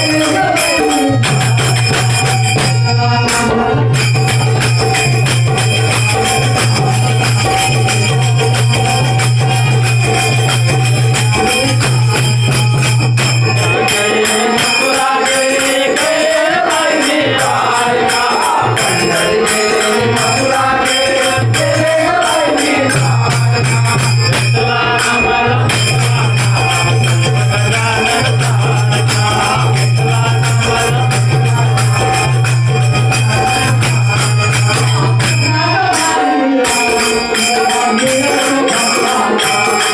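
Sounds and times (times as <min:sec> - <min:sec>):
hand drum: 0:00.0 - 0:15.2, 0:17.3 - 0:36.0
jingling hand percussion: 0:00.0 - 0:39.9
devotional song: 0:13.2 - 0:39.9.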